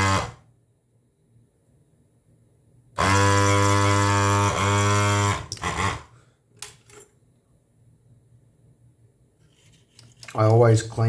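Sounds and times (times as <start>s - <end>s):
vacuum pump buzzing hum: 0.0s - 0.5s, 3.0s - 6.2s.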